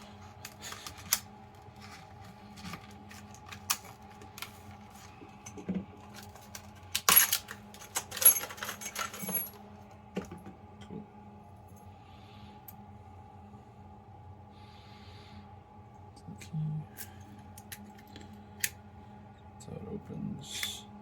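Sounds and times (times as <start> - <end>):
keys jangling: 7.0 - 9.6.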